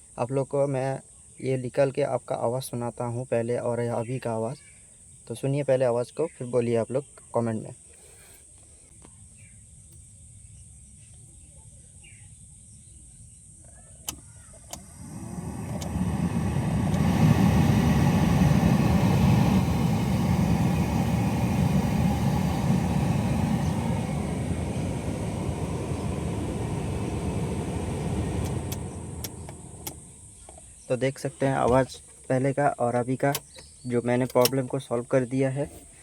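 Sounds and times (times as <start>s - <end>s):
blower fan rushing: 14.5s - 32.0s.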